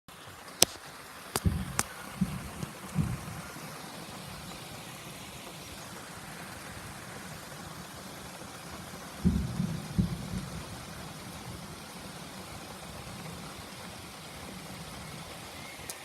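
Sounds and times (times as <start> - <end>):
storm noise hiss: 0.1 - 16.0
low dull booms: 1.4 - 3.6, 9.2 - 11.8.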